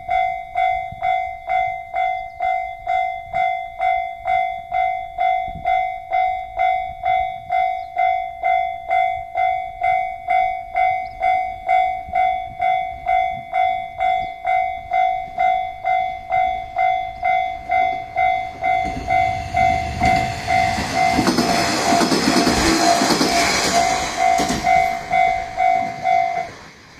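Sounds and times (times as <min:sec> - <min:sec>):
level crossing bell dinging: 0:00.0 - 0:26.6
diesel railcar passing: 0:06.0 - 0:26.9.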